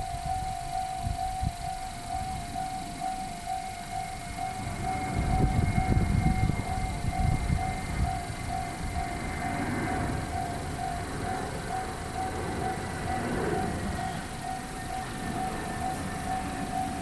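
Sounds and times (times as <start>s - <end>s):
level crossing warning bell: 0.0s - 17.0s
train rumbling over crossing: 0.0s - 17.0s.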